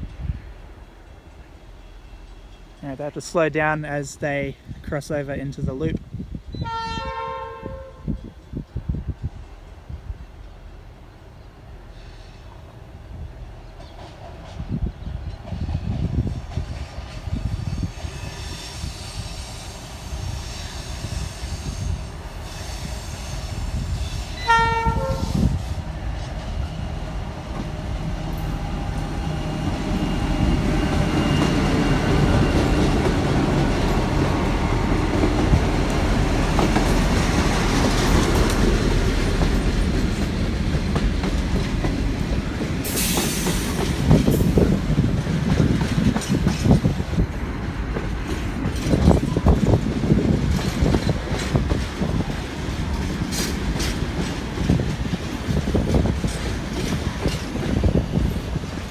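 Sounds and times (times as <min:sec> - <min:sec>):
freight train rumbling: 0:00.0 - 0:58.9
wind buffeting microphone: 0:04.6 - 0:10.7, 0:13.0 - 0:58.9
train horn blast: 0:06.6 - 0:08.3, 0:24.4 - 0:25.6
train wheel clatter: 0:27.4 - 0:58.9.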